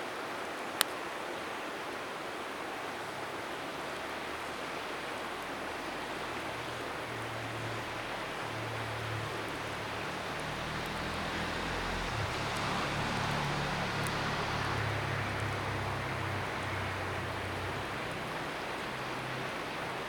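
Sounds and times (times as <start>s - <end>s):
river water flowing: 0.0s - 20.0s
wood fire crackling: 8.9s - 19.6s.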